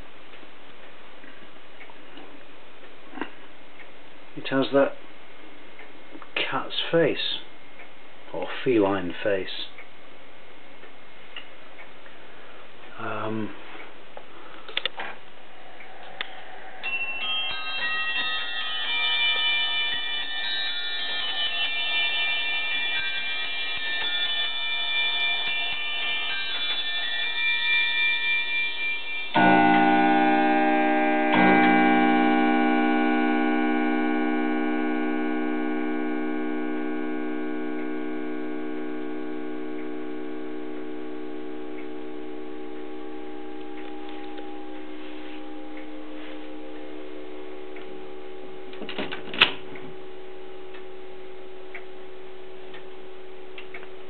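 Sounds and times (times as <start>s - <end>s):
clock chimes: 16.5s - 48.8s
clock bell strikes: 16.7s - 48.8s
clock ticking: 29.3s - 48.8s, 51.7s - 52.0s.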